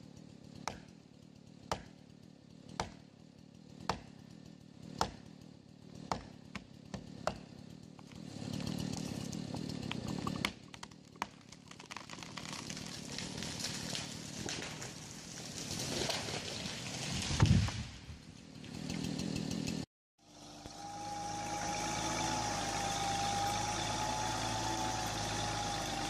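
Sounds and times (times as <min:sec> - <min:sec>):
chainsaw running: 0:00.0 - 0:17.4, 0:18.3 - 0:26.0
sharp chopping strikes: 0:00.5 - 0:01.0, 0:01.6 - 0:14.9.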